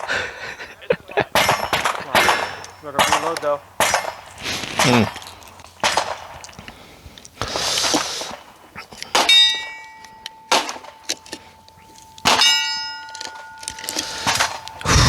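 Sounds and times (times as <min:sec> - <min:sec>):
sharp cracks: 0:01.3 - 0:09.5, 0:10.5 - 0:15.0
steel plate struck and ringing: 0:09.2 - 0:11.0, 0:12.2 - 0:13.6.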